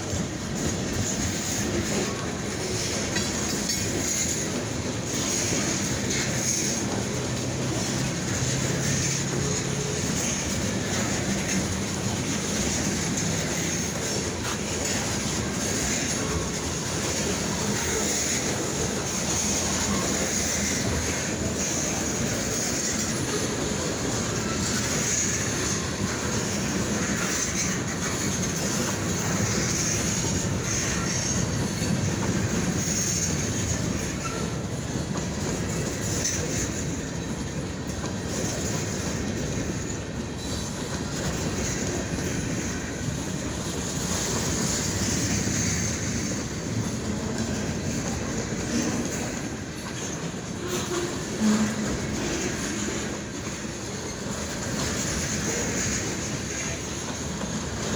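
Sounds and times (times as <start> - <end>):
train wheels rumbling on rails: 0.0 - 57.9.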